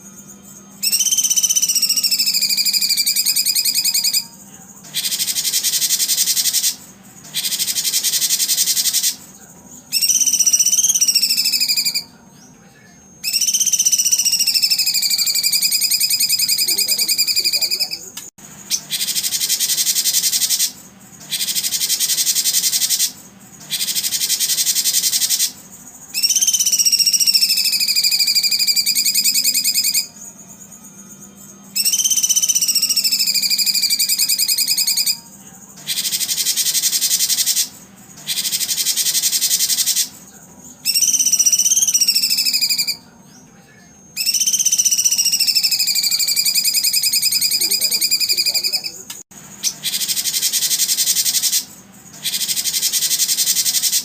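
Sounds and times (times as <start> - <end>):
buzzing bird trills: 0.0 - 12.2, 13.2 - 43.1, 44.1 - 54.0
whistled bird calls: 0.8 - 9.2, 9.8 - 12.5, 13.2 - 30.3, 31.6 - 40.2, 40.8 - 43.5, 44.2 - 49.0, 49.6 - 54.0.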